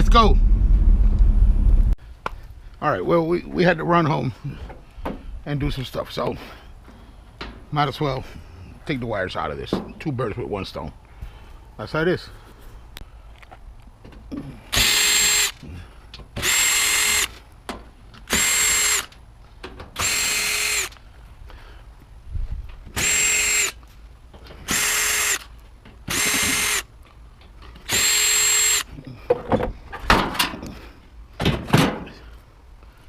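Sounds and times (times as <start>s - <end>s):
power drill bursts: 14.7s - 15.6s, 16.4s - 17.4s, 18.3s - 19.1s, 20.0s - 21.0s, 23.0s - 23.8s, 24.6s - 25.5s, 26.1s - 26.9s, 27.8s - 28.9s.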